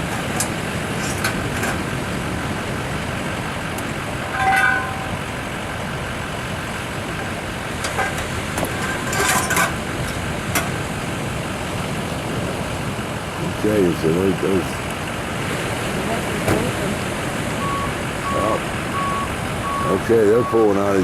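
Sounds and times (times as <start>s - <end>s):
truck engine rumble: 0.0s - 21.0s
short pitched tone: 4.3s - 5.3s.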